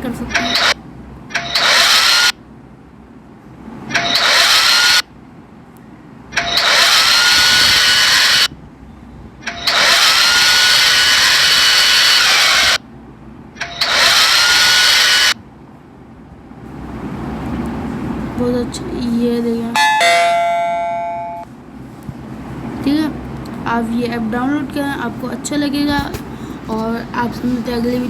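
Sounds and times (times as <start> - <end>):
electric motor whine: 6.4 - 8.5, 9.5 - 12.8, 13.6 - 15.4.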